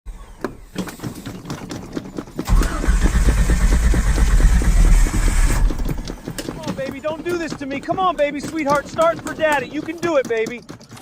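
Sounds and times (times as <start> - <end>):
starter cranking engine: 0.1 - 11.0
quiet ticking: 4.0 - 11.0.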